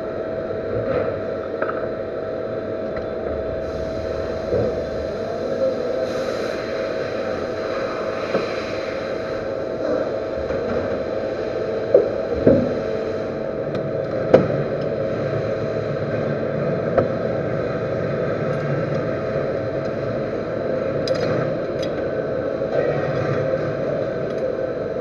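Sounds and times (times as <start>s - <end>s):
metal lathe humming: 3.0s - 10.4s.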